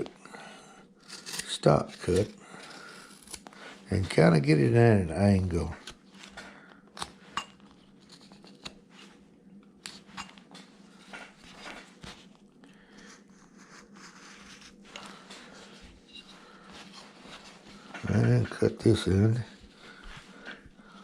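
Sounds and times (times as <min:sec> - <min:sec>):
faint steady hum: 0:00.0 - 0:21.0
knife carving wood: 0:01.0 - 0:03.6, 0:05.7 - 0:06.0, 0:07.9 - 0:08.8, 0:09.8 - 0:10.2.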